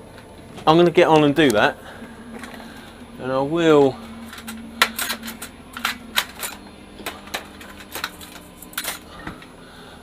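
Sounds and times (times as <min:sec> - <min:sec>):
faint steady hum: 0:00.0 - 0:10.0
small metal parts clinking: 0:04.3 - 0:09.1.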